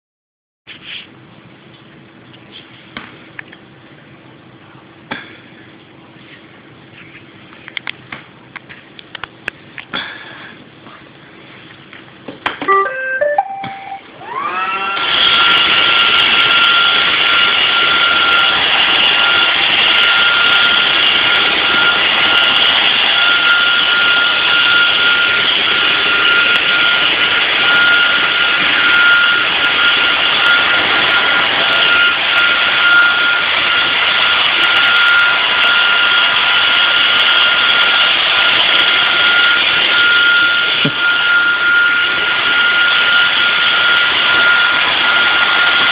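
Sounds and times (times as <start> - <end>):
vacuum cleaner motor whine: 12.7 - 45.9.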